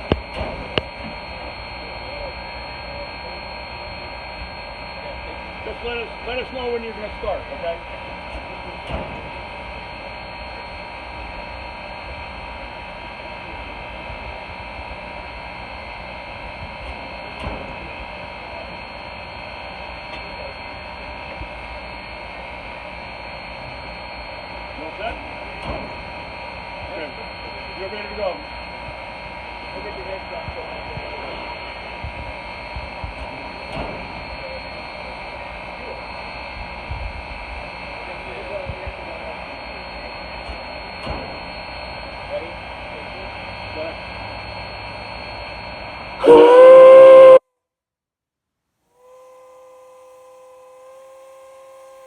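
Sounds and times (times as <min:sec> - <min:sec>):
constant tones: 0:00.0 - 0:47.4
steam locomotive hiss and hum: 0:00.0 - 0:47.4, 0:49.0 - 0:52.0
steam locomotive hissing: 0:42.2 - 0:47.4.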